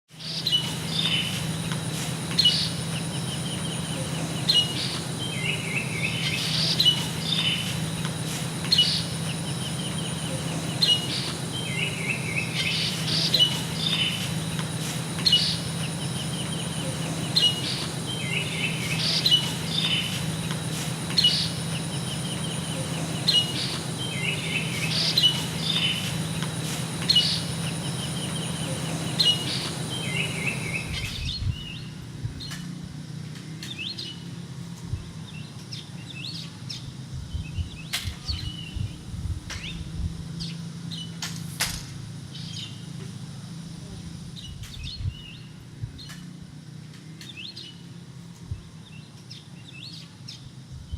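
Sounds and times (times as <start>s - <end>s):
birds chirping: 0.1s - 41.3s, 42.1s - 50.9s
high-pitched whine: 0.1s - 46.5s
buzzy trilled bird phrases: 0.2s - 31.9s
low hum: 0.2s - 50.9s.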